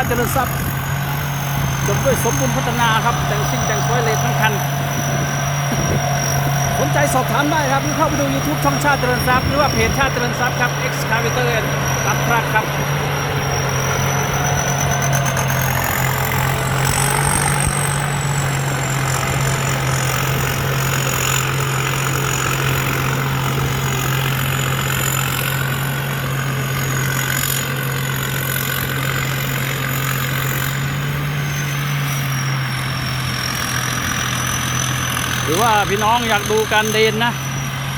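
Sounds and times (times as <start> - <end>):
combine harvester engine running: 0.0 - 37.9
high whine: 0.0 - 37.9.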